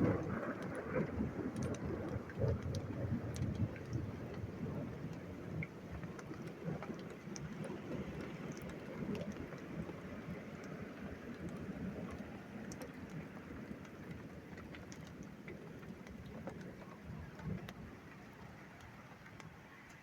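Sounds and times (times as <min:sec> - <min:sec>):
distant thunder rumble: 0:00.0 - 0:07.0
rain drops ticking: 0:00.0 - 0:20.0.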